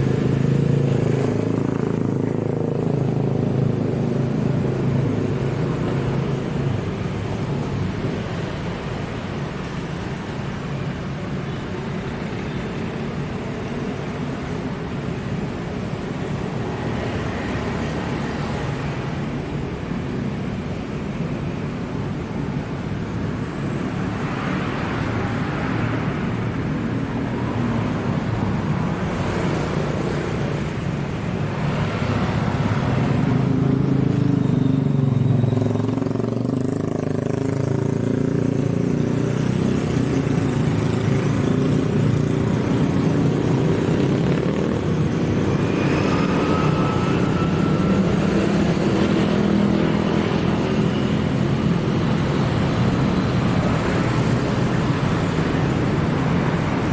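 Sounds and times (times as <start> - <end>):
road traffic passing: 0.0 - 56.9.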